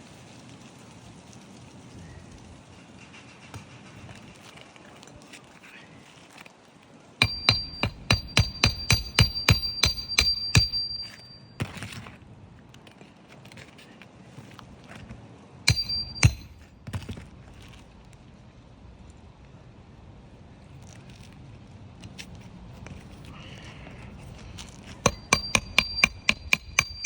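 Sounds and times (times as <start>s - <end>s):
hammer striking nails: 7.2s - 11.2s, 15.7s - 16.7s, 25.0s - 27.0s.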